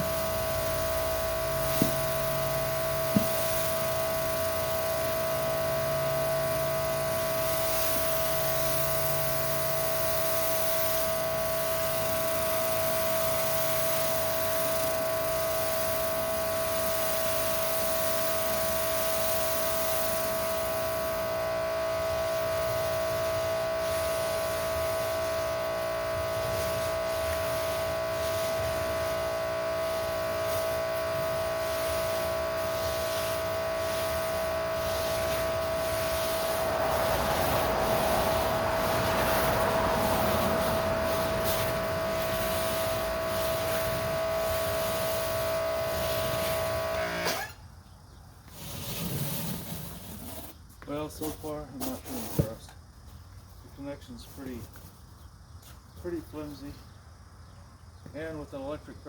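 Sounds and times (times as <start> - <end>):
water spray hissing: 0.0 - 21.4, 22.4 - 47.5
pressure washer whine: 0.0 - 47.7.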